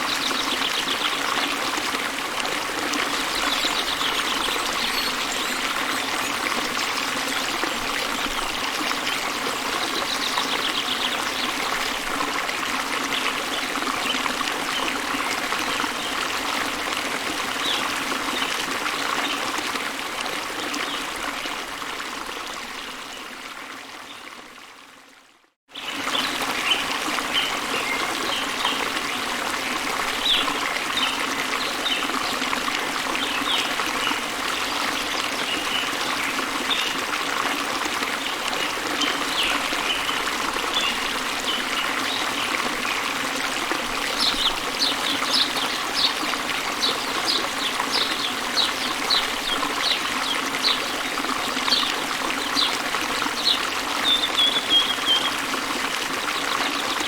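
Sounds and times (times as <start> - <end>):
small birds chirping: 3.3 - 6.6, 51.6 - 55.4
waterfall rushing: 39.3 - 56.6.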